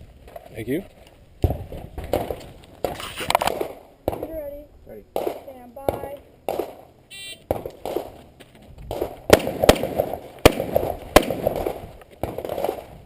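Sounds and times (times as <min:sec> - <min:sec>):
rifle shots: 0:02.1 - 0:08.2, 0:08.9 - 0:13.0.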